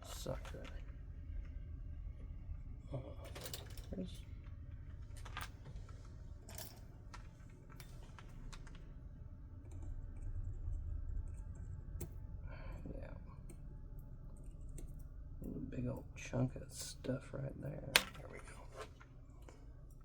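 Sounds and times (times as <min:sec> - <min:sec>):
low steady hum: 0:00.0 - 0:20.0
small parts clicking and tapping: 0:03.2 - 0:09.0, 0:13.3 - 0:16.1, 0:17.6 - 0:20.0.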